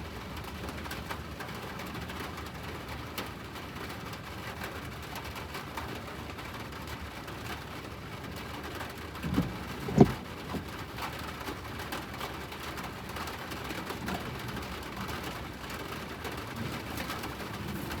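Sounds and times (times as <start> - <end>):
excavator machine noise: 9.2 - 10.9
loud knocks: 9.3 - 10.8.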